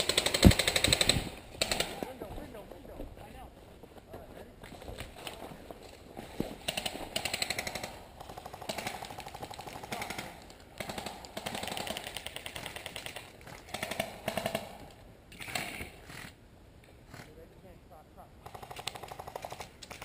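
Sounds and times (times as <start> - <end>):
airsoft guns firing bursts: 0.0 - 2.1, 6.6 - 16.0, 18.4 - 20.0.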